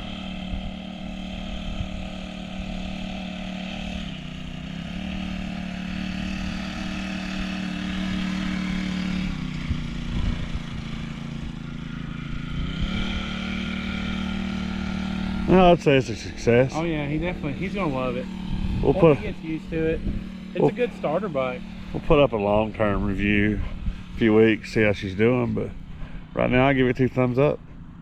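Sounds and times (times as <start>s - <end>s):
mini bike engine revving: 0.0s - 28.0s.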